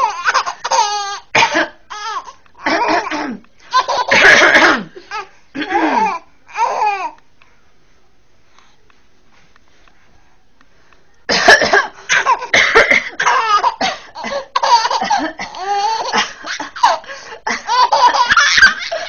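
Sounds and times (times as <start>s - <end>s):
baby laughing: 0.0s - 1.3s, 1.9s - 5.3s, 12.2s - 19.0s
person coughing: 1.4s - 1.8s, 2.6s - 3.4s, 4.1s - 6.2s, 11.3s - 17.6s.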